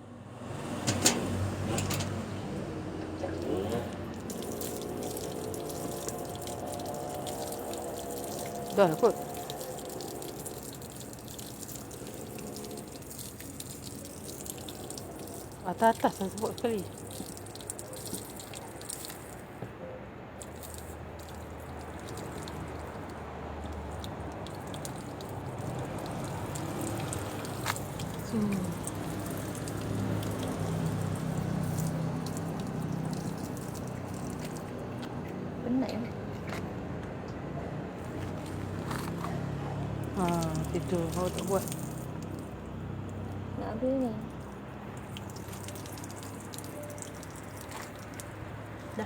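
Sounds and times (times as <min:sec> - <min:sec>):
water pouring and splashing: 0:00.4 - 0:19.6, 0:20.4 - 0:36.6, 0:38.0 - 0:49.0.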